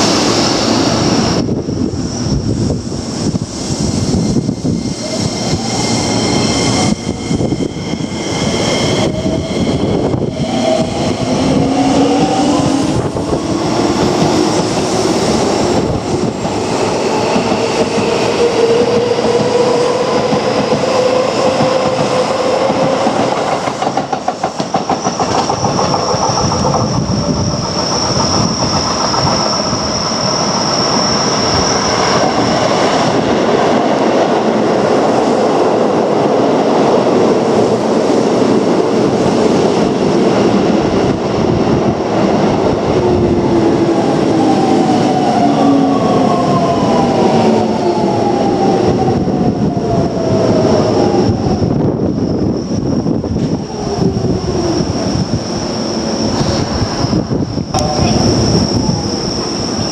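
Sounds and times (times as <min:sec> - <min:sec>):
train wheels clacking over rail joints: 0:20.2 - 0:30.6.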